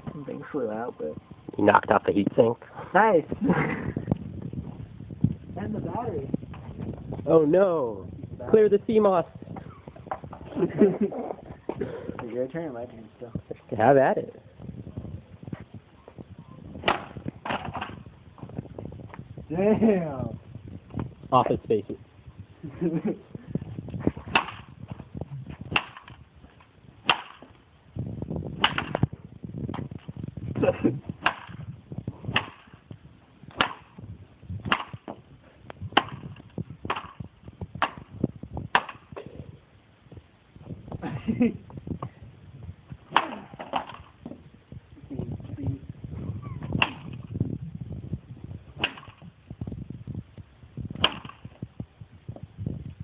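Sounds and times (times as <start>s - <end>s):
knocks and rattling: 16.8s - 18.6s, 28.6s - 31.7s.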